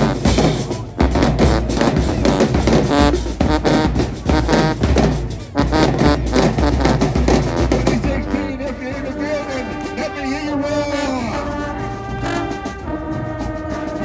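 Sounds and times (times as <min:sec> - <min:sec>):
bass drums and snares pounding: 0:00.0 - 0:08.6
marching band music: 0:00.0 - 0:14.0.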